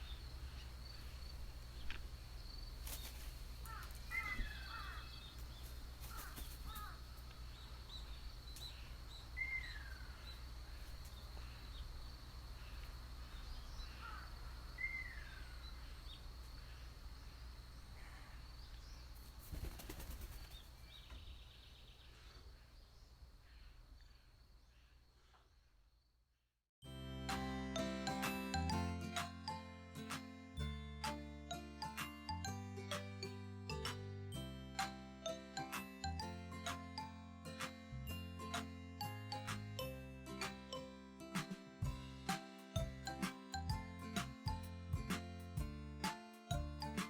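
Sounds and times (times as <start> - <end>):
bird falling calls: 2.9 - 5.4, 6.0 - 7.1.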